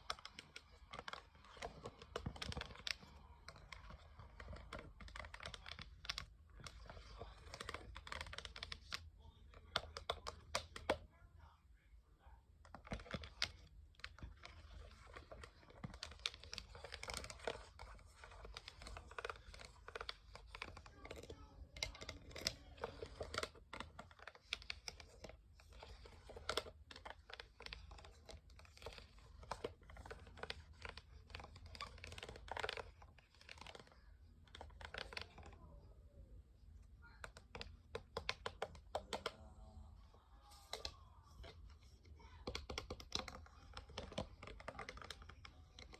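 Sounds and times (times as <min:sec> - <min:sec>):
scratching and crinkling: 0:00.0 - 0:11.0, 0:12.6 - 0:45.9
tapping and clicking on hard plastic: 0:00.0 - 0:11.0, 0:12.6 - 0:35.6, 0:37.2 - 0:39.4, 0:40.5 - 0:45.9.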